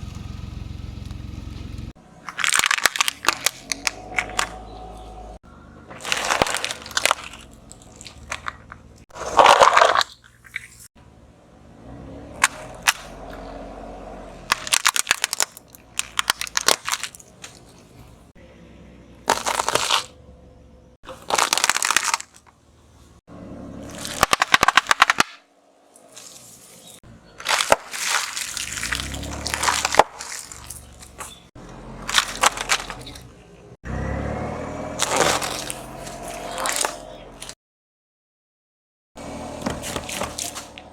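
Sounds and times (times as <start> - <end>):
car rumble: 0.0 - 37.6, 39.2 - 40.9
tyres crushing objects: 2.1 - 5.2, 5.9 - 10.9, 12.4 - 13.5, 14.4 - 18.2, 19.2 - 20.2, 21.0 - 22.6, 23.8 - 33.8, 34.9 - 37.6, 39.2 - 40.9.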